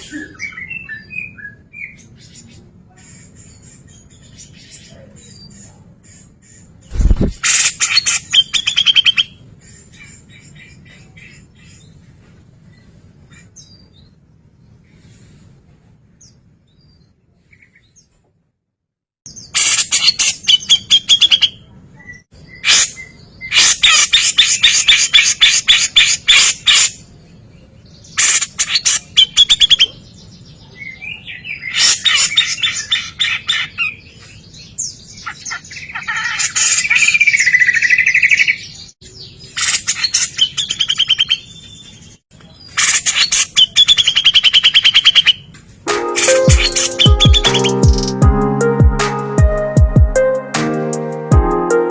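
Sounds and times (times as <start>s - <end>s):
bird song rapid repeated notes: 5.5s - 10.2s, 19.3s - 21.6s, 28.2s - 30.2s, 35.0s - 41.8s, 42.7s - 50.6s.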